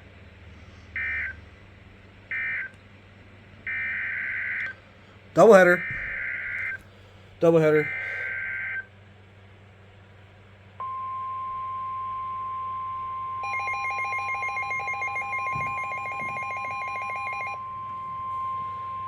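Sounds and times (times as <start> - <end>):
steady electronic alarm tone: 1.0 - 1.4, 2.3 - 2.7, 3.7 - 4.7, 5.4 - 6.8, 7.5 - 8.9, 10.8 - 19.0.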